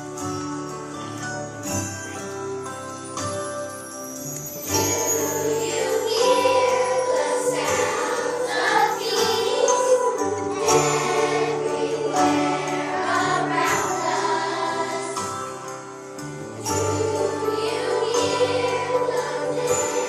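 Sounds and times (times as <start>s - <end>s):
instrumental accompaniment: 0.0s - 20.0s
choir singing: 4.7s - 15.8s, 16.6s - 20.0s.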